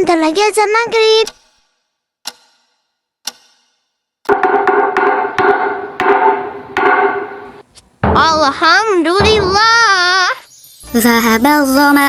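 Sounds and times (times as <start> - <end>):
pitched percussion strikes: 3.4 - 8.6, 9.2 - 9.9
sharp wooden knocks: 4.3 - 9.8.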